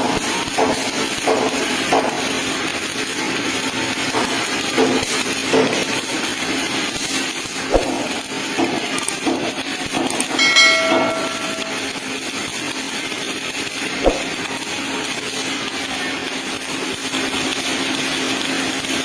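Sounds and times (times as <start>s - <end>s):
welding arc crackling hiss: 0.0s - 19.0s
brief ringing tone: 10.4s - 12.1s.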